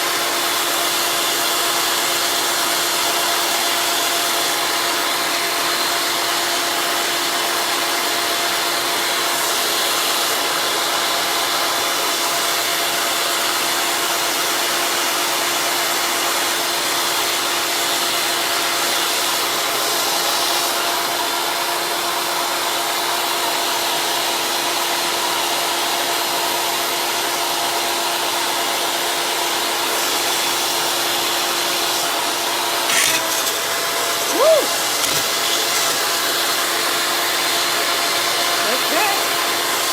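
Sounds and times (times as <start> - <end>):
small electric motor humming: 29.8 - 39.6.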